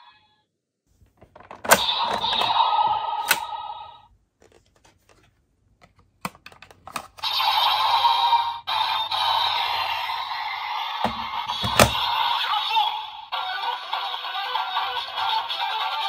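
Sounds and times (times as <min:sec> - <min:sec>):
toy electronic sound effects: 0:01.7 - 0:03.9, 0:07.2 - 0:16.0
plastic clicks: 0:04.4 - 0:07.2.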